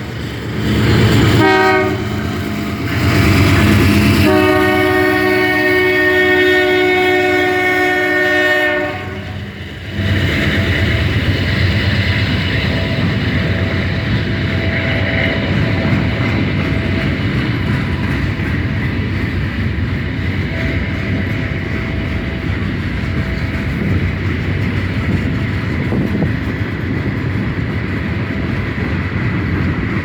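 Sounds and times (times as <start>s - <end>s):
train wheels rumbling on rail: 0.0s - 30.0s
locomotive air horn: 1.3s - 2.5s, 3.2s - 9.6s.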